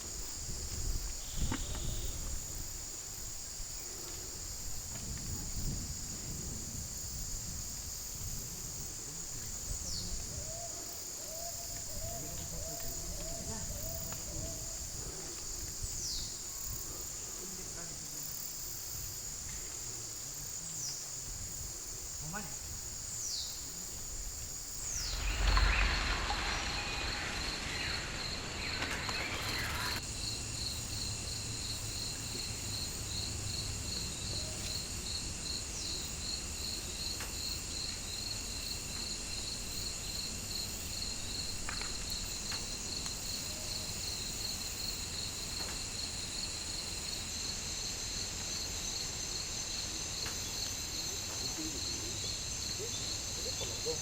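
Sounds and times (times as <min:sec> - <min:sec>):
high insect hiss: 0:00.0 - 0:54.0
insects trilling: 0:00.0 - 0:54.0
loud rush of noise with rumble: 0:24.8 - 0:30.1.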